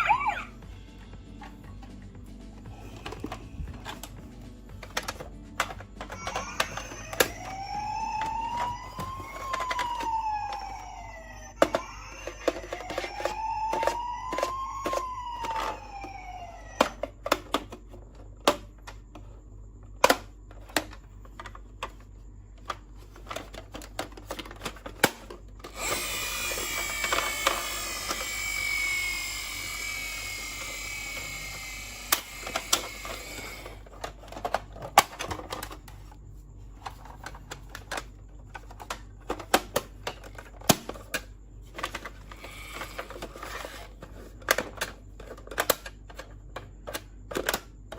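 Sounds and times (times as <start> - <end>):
toy siren wavering: 0.0 - 0.6, 5.7 - 17.1, 25.6 - 33.9
plastic clicks and clatter: 2.9 - 10.8, 20.0 - 28.4, 32.1 - 36.2, 36.8 - 47.9
whirring with falling whine: 6.4 - 12.0, 25.7 - 35.9.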